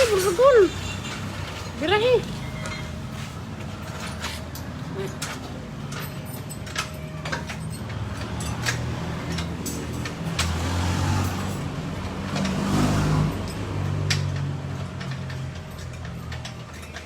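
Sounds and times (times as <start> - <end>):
car engine revving: 8.3 - 15.2.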